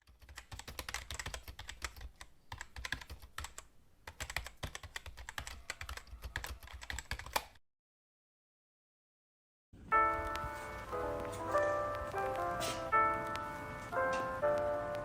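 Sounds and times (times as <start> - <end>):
rapid irregular clicking: 0.0 - 7.5.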